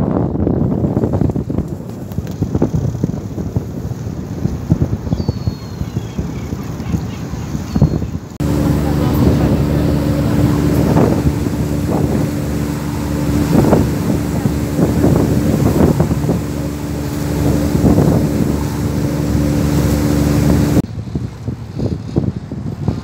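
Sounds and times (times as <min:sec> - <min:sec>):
wind gusts on microphone: 0:00.0 - 0:23.0
boat engine droning: 0:05.7 - 0:21.6.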